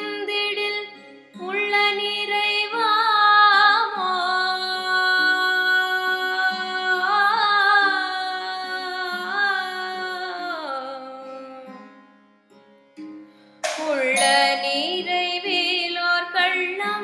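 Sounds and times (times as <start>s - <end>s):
woman singing wordless vowel: 13.8s - 17.0s.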